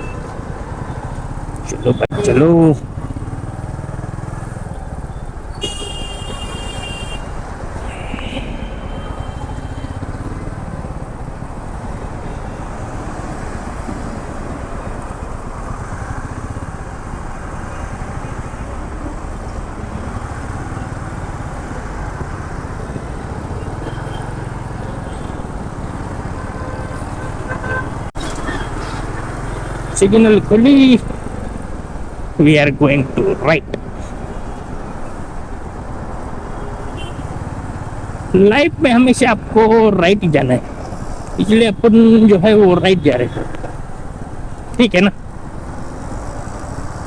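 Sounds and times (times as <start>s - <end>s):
vehicle horn honking: 0.0s - 0.3s, 1.8s - 2.5s, 5.5s - 10.2s, 26.2s - 30.4s, 36.6s - 37.4s
traffic noise: 0.0s - 47.0s.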